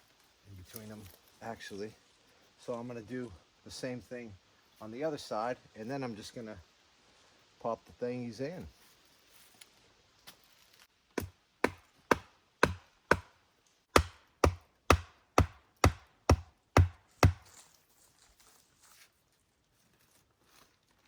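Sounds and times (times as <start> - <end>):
wood being struck hard: 11.2 - 13.3, 13.9 - 17.4.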